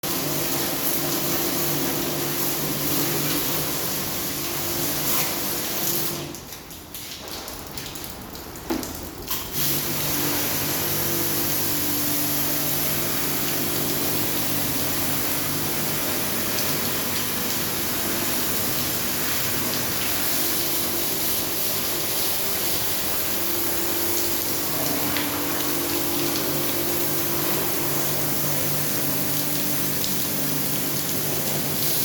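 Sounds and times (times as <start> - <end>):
pump motor hum: 0.0 - 8.0, 8.8 - 32.0
pressure washer spray hiss: 9.5 - 32.0.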